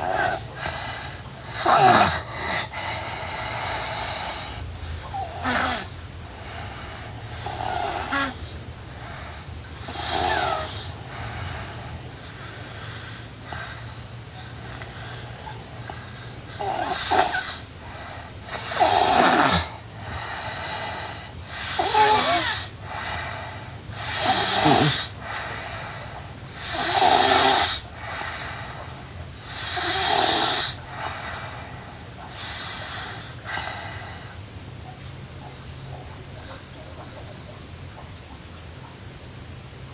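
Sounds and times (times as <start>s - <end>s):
girl snoring: 0.0s - 31.7s.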